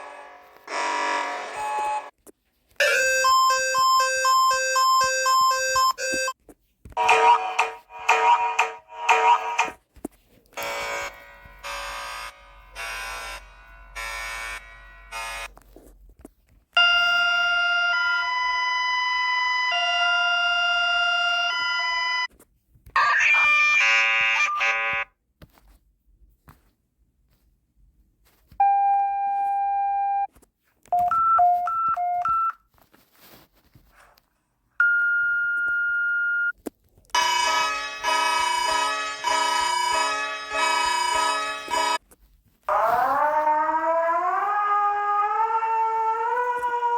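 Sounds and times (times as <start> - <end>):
steady high alert tone: 2.8 - 6.4, 7.0 - 9.8
two-tone warning beeping: 2.8 - 6.4, 37.2 - 42.0
electronic alert buzzer pulsing: 10.6 - 15.5.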